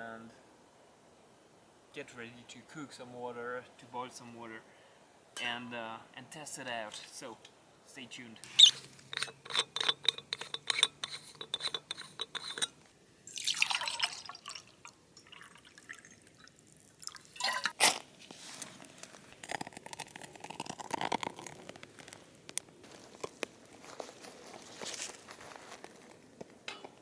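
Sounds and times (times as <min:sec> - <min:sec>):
liquid pouring: 0:13.3 - 0:17.8, 0:19.4 - 0:21.8.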